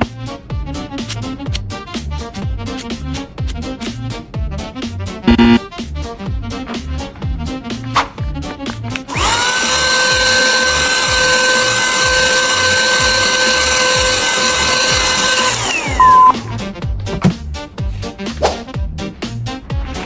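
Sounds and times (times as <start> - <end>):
background music: 0.0 - 20.0
short electronic beep: 5.3 - 5.6, 16.0 - 16.4
small electric motor whining: 9.0 - 16.6.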